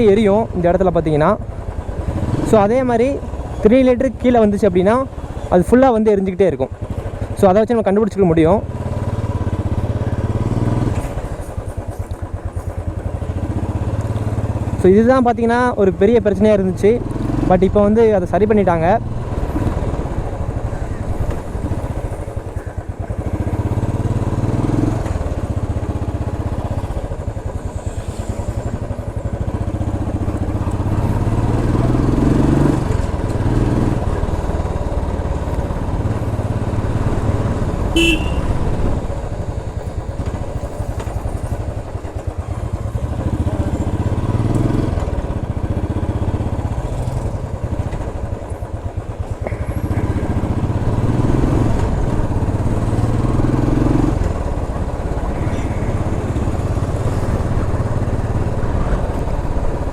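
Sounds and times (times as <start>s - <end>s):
motorcycle engine and exhaust: 0.0s - 59.9s
horn toot: 37.8s - 38.8s.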